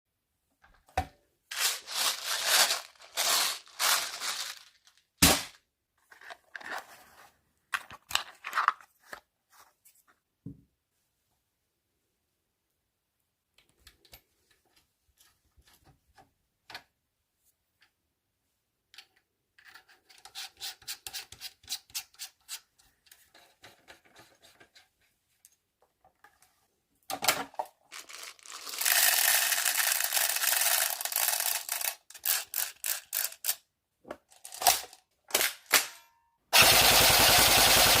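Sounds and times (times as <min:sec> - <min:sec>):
airsoft rifle full-auto fire: 0:36.5 - 0:38.0.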